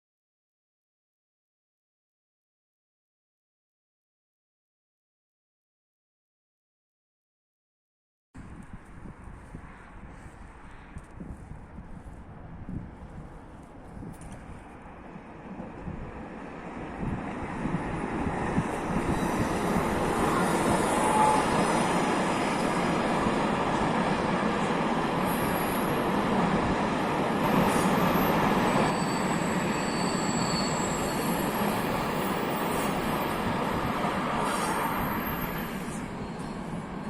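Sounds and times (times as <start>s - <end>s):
high wheel squeal: 19.0s - 23.1s, 25.3s - 26.0s, 27.5s - 37.0s.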